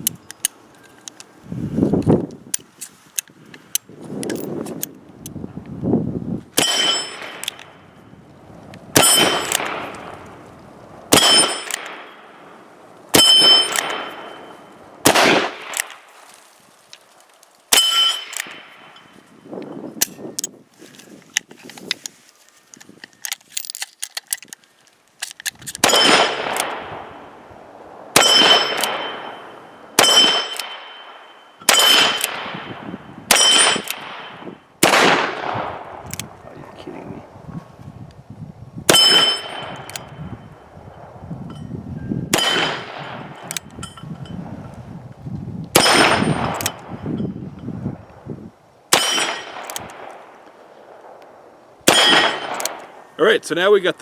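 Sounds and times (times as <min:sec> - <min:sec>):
metallic ring: 0:06.6 - 0:07.6, 0:11.2 - 0:12.2, 0:13.2 - 0:14.8, 0:17.7 - 0:20.3, 0:28.2 - 0:32.2, 0:38.9 - 0:40.6, 0:41.4 - 0:44.8.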